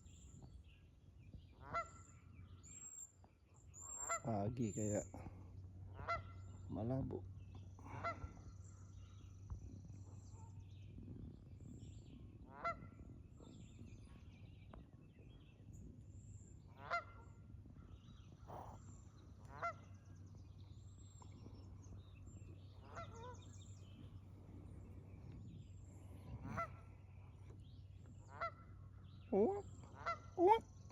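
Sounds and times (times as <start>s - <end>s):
low steady hum: 0.0s - 30.9s
wild geese honking: 1.6s - 2.1s, 3.8s - 4.4s, 5.2s - 6.7s, 7.7s - 8.6s, 12.5s - 13.0s, 16.7s - 17.5s, 18.4s - 20.0s, 21.2s - 30.7s.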